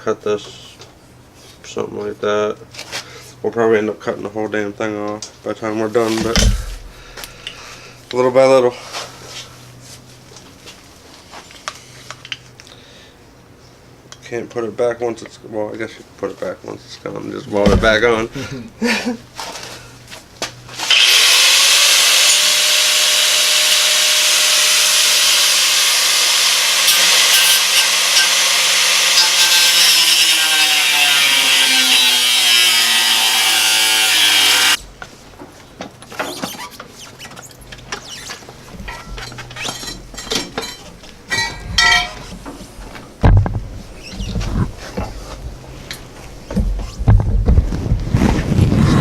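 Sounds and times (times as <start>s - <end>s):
metal clanks and knocks: 17.6s - 18.2s, 38.8s - 42.6s
power tool grinding metal: 20.8s - 34.8s.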